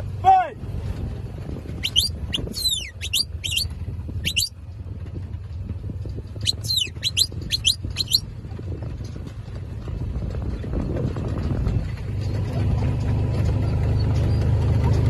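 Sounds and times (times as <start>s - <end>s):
shepherd's whistle sliding notes: 1.8s - 4.5s, 6.4s - 8.2s.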